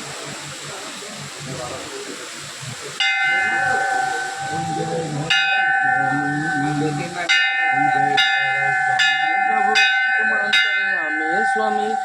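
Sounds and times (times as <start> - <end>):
temple bell clanging: 3.0 - 12.0.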